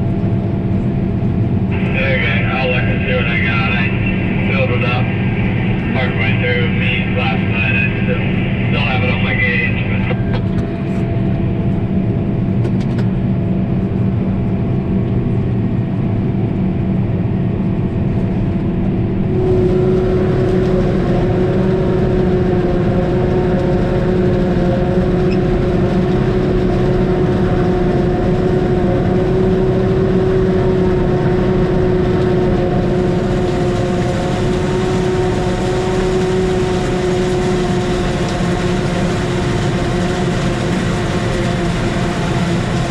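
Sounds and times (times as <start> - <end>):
tractor engine running: 19.2 - 42.9.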